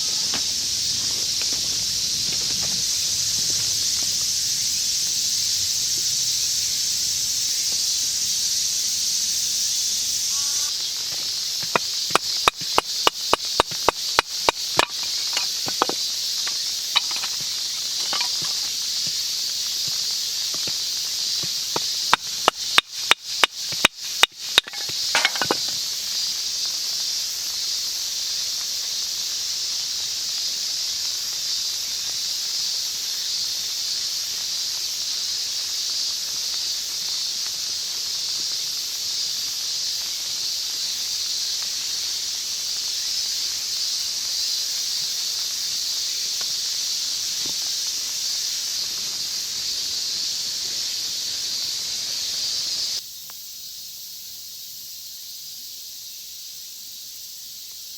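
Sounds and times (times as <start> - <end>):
steady high hiss: 0.0 - 57.9.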